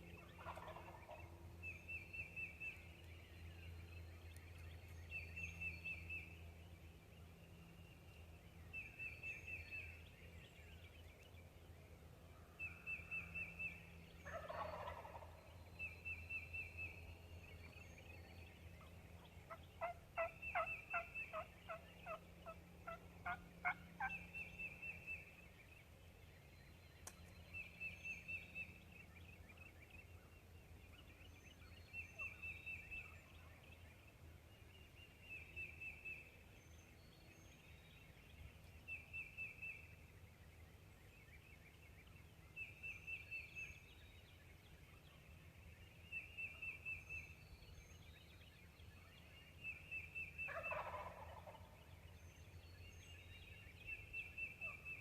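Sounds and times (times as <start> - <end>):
turkey gobbling: 0.2 - 1.2, 14.2 - 15.4, 19.5 - 24.2, 50.5 - 51.8.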